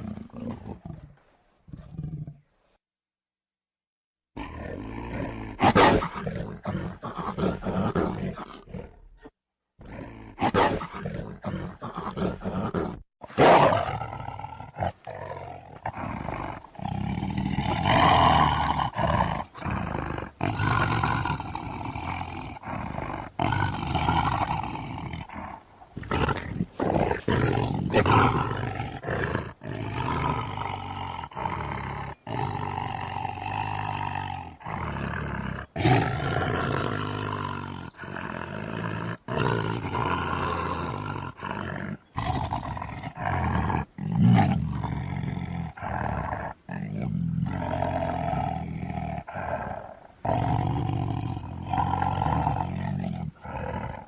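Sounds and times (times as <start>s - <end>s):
tiger roaring and growling: 0.0s - 2.7s, 4.4s - 54.0s.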